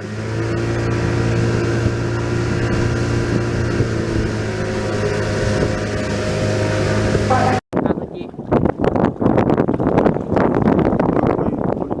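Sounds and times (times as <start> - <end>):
engine droning steadily: 0.0 - 7.6.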